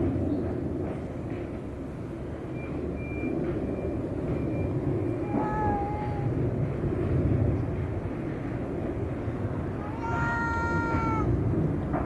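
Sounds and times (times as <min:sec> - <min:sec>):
cat meowing: 0:05.2 - 0:06.5, 0:09.8 - 0:11.3.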